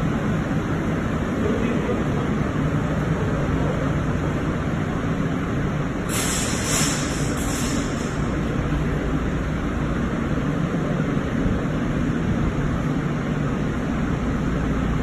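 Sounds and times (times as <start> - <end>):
machinery low rumble: 0.0 - 15.0
hiss of escaping air: 6.0 - 8.6.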